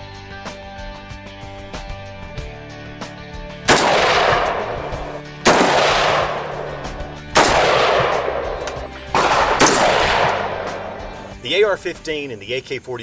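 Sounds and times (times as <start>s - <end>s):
background music: 0.0s - 13.0s
rifle gunfire volleys: 3.6s - 11.3s.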